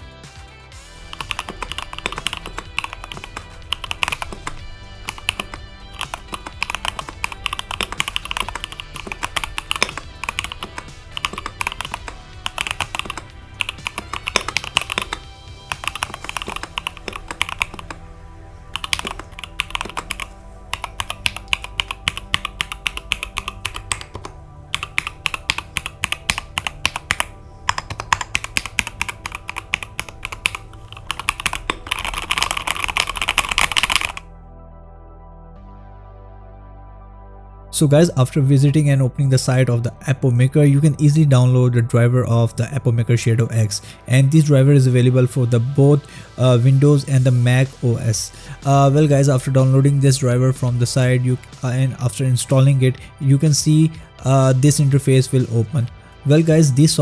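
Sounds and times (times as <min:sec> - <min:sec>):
background music: 0:00.0 - 0:57.0
mechanical keyboard typing: 0:01.0 - 0:34.2.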